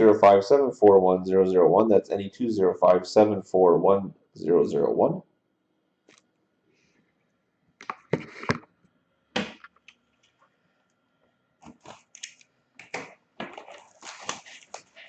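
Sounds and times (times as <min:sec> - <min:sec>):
packaging crackling and rustling: 0:11.6 - 0:15.0.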